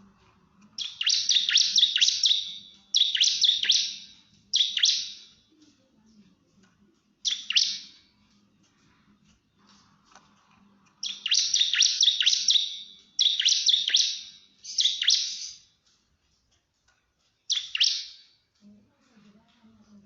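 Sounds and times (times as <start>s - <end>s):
bird singing rapid high notes: 0.8s - 5.4s, 7.2s - 8.1s, 11.0s - 15.7s, 17.5s - 18.3s.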